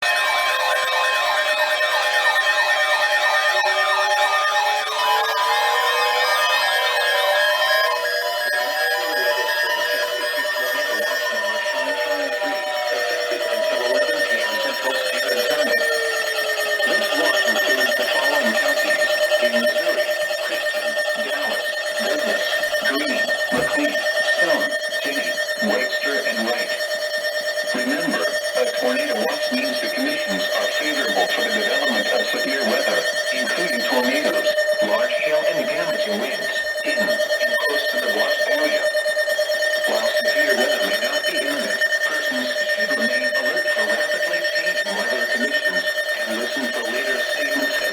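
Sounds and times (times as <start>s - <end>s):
electronic alarm tone fluttering: 0.0s - 47.9s.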